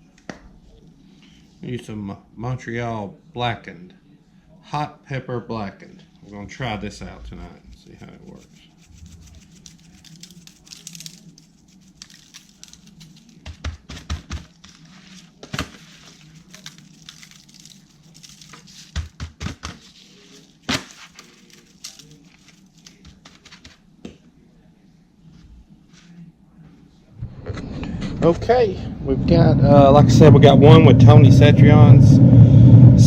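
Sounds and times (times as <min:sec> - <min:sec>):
spice shaker rustling patter: 0:07.9 - 0:23.8.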